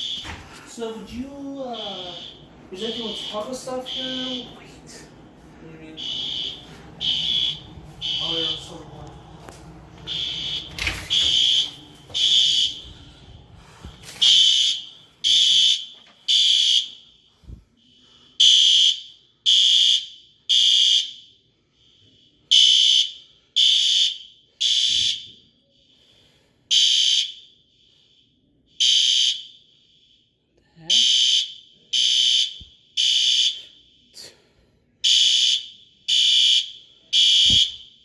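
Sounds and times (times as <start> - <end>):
faint alarm tone: 0.0 - 5.0, 5.7 - 9.1, 10.0 - 13.0
fire alarm beeping: 0.0 - 5.0, 5.7 - 13.0, 14.0 - 34.1, 35.0 - 38.0.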